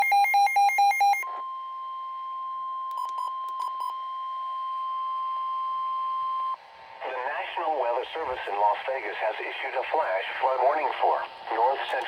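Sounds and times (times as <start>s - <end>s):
steady warning alarm tone: 0.0s - 6.6s.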